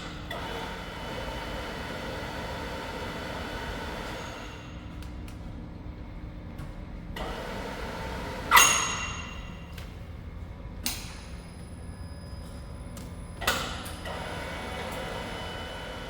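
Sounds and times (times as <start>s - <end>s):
low shop hum: 0.0s - 16.0s.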